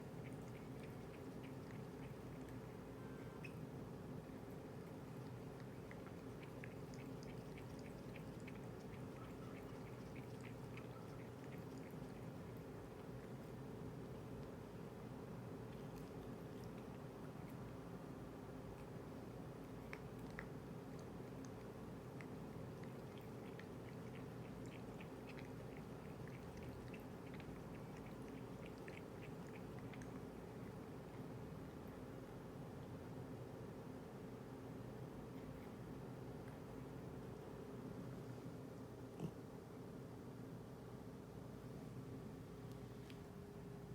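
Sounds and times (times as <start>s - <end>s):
cat lapping water: 0.0s - 33.0s
steady low hum: 0.0s - 43.9s.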